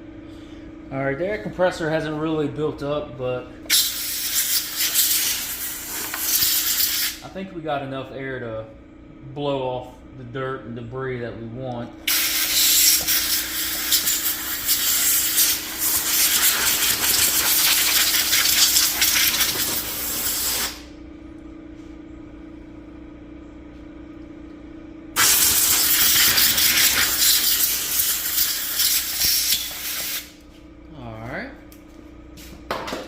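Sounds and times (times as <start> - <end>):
air compressor hum: 0.0 - 31.1, 31.9 - 33.0
compressed air blow gun hissing: 3.7 - 7.2, 12.1 - 20.9, 25.2 - 30.3.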